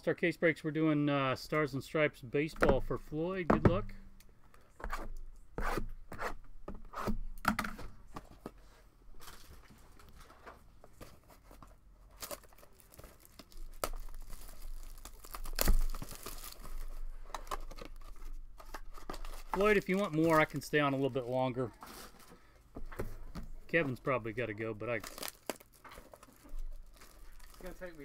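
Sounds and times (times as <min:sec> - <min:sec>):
plastic wrapping tearing and crinkling: 0:12.1 - 0:20.8, 0:24.9 - 0:28.0.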